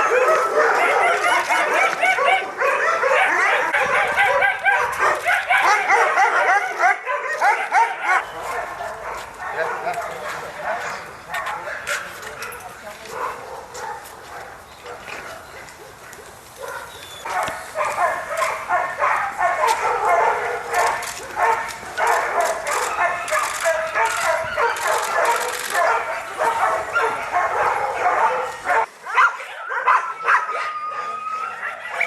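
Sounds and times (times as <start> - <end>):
many dogs barking: 0.0 - 32.0.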